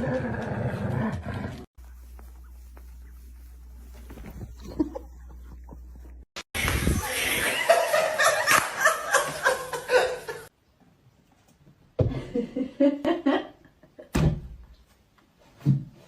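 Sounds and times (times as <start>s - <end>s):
people laughing: 7.0s - 10.5s.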